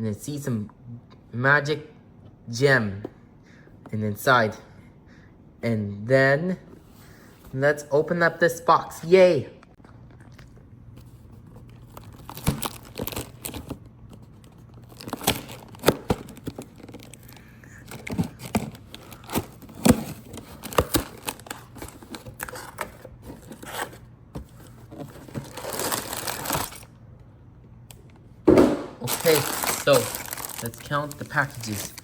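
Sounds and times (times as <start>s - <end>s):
plastic bags crinkling: 11.9s - 13.6s, 14.8s - 22.7s, 25.2s - 26.9s, 29.0s - 32.0s
cardboard tearing: 25.2s - 26.8s, 29.0s - 32.0s.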